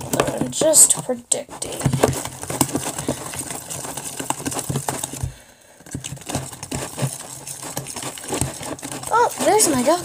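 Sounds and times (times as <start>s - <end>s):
spoon stirring slime in container: 6.0s - 10.0s.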